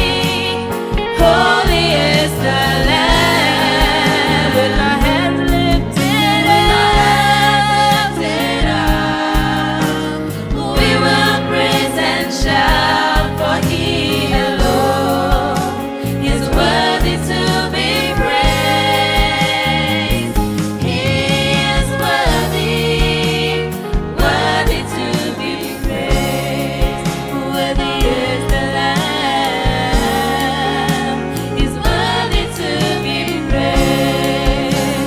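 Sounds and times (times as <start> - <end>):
instrumental accompaniment: 0.0 - 35.0
youth choir singing gospel: 0.0 - 35.0.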